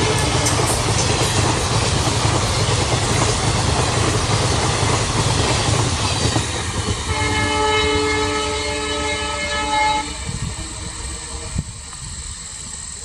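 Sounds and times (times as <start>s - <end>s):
locomotive horn chord: 0.0s - 0.8s, 7.1s - 11.8s
train rumbling past: 0.0s - 13.0s.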